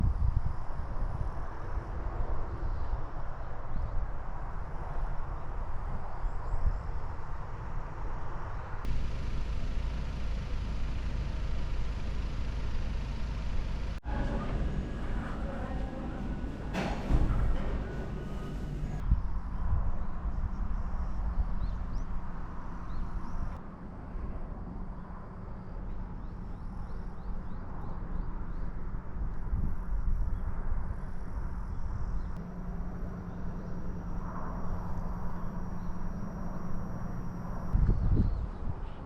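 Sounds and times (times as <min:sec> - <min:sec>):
low vehicle rumble: 0:07.7 - 0:20.1.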